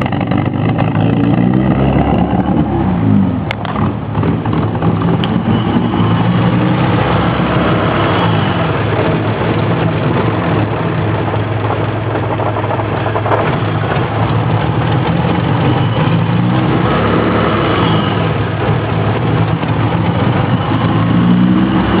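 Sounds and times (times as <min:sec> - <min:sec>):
car engine idling roughly: 0:08.8 - 0:16.6, 0:18.4 - 0:20.9.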